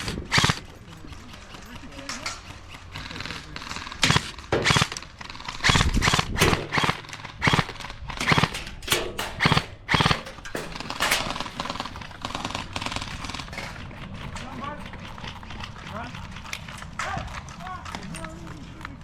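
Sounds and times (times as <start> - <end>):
airsoft guns firing: 0.0 - 0.7, 3.0 - 13.7.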